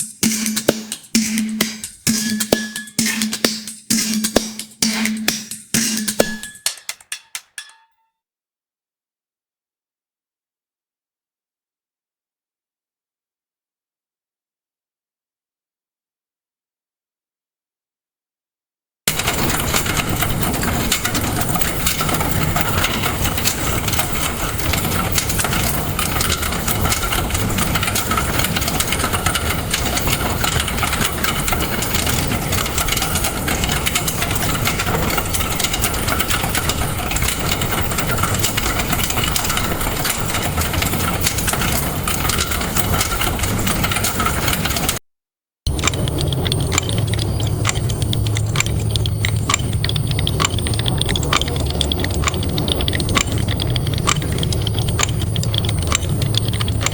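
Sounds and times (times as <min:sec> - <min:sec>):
engine-like rumble and clatter: 0:19.1 - 0:45.0, 0:45.7 - 0:56.9.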